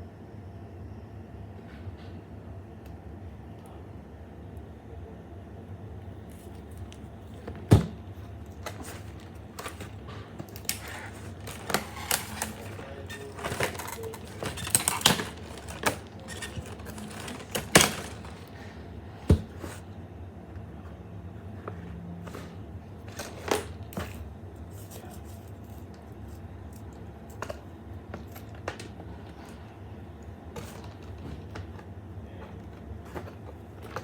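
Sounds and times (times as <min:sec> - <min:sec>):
toy packaging rustling and clicking: 0:08.2 - 0:19.8.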